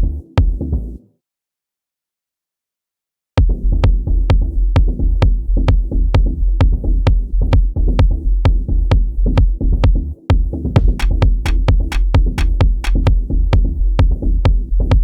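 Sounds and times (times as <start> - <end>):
deep steady bass: 0.0 - 1.0, 3.4 - 15.0
sharp percussion hits: 10.8 - 13.0.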